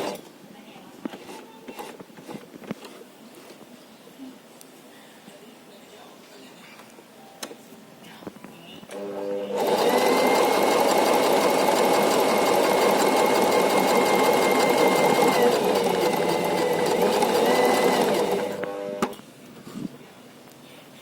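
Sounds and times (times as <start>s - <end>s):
sewing machine stitching: 9.0s - 19.1s.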